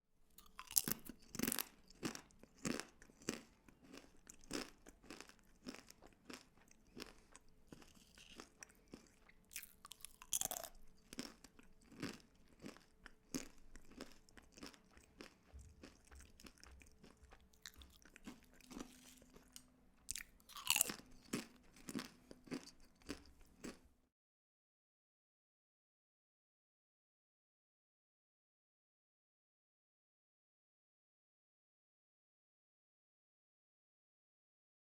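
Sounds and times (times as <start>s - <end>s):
crunching and chewing crisp food: 0.3s - 24.0s.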